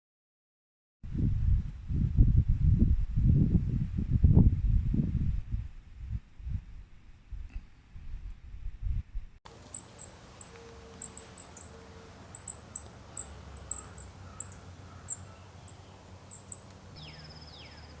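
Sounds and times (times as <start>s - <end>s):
small animal chirping: 9.6s - 18.0s.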